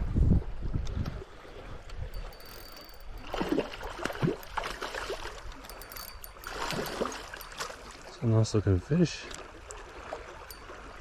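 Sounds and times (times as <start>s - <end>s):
stream water running: 0.7s - 11.0s
fish splashing in water: 3.1s - 8.1s.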